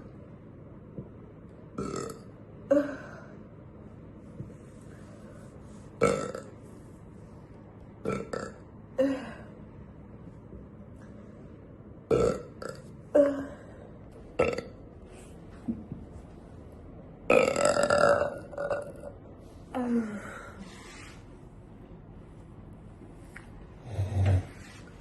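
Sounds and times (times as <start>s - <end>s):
woman burping: 1.8s - 3.2s, 6.0s - 6.5s, 12.1s - 13.6s, 14.4s - 14.8s, 17.3s - 19.2s.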